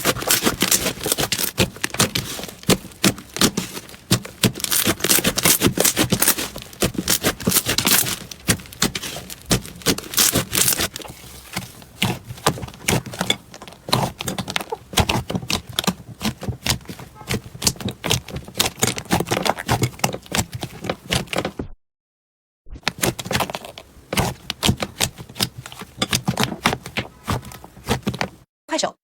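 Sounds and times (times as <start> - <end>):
slime crackling and popping: 0.0 - 21.4, 22.8 - 28.2.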